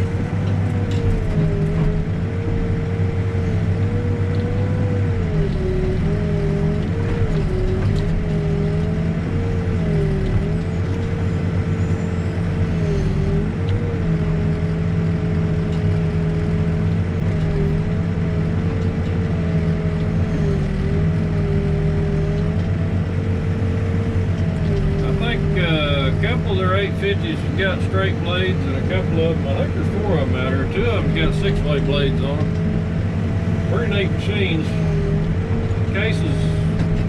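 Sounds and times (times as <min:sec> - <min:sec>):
backhoe diesel engine running: 0:00.0 - 0:37.0.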